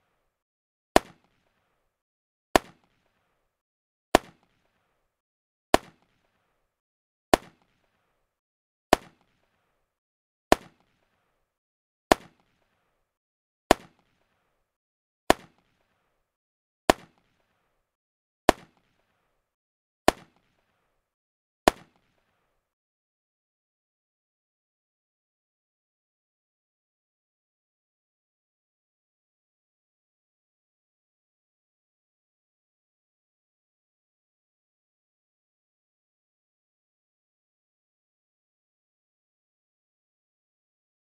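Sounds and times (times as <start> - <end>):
sharp gunshots: 1.0 - 1.6, 2.6 - 3.3, 4.2 - 4.9, 5.8 - 6.4, 7.3 - 8.0, 8.9 - 9.6, 10.5 - 11.2, 12.1 - 12.8, 13.7 - 14.4, 15.3 - 16.0, 18.5 - 19.2, 20.1 - 20.8, 21.7 - 22.4.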